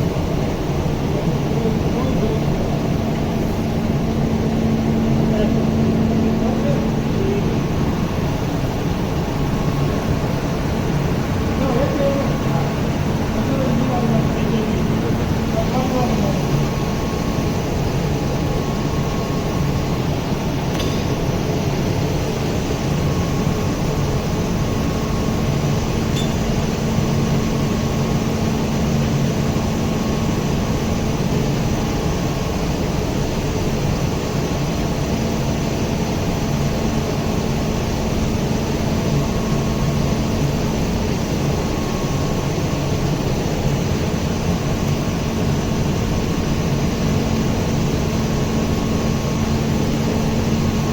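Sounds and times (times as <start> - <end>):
machinery humming: 0.0 - 50.9
faint clink: 20.7 - 21.2, 26.1 - 26.6.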